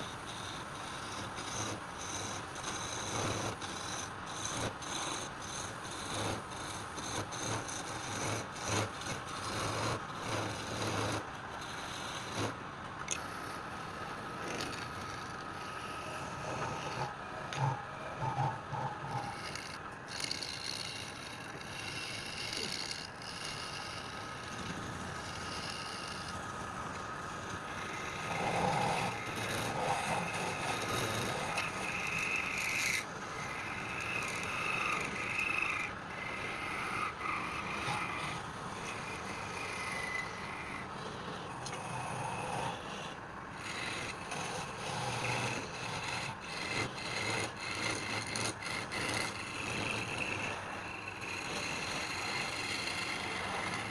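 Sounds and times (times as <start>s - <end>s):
tool scraping spinning wood: 0.0s - 53.9s.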